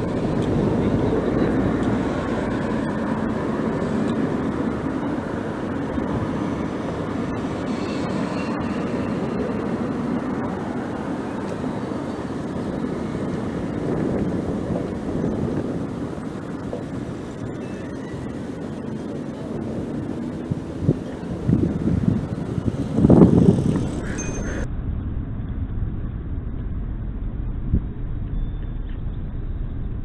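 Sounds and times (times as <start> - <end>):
bicycle road noise: 0.0 - 30.0
wind on microphone: 0.0 - 30.0.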